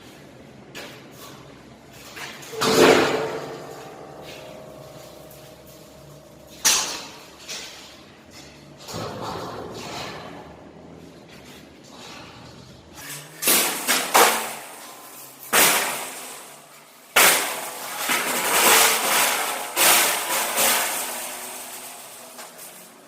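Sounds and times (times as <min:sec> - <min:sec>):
metal strikes ringing: 0:02.5 - 0:07.2.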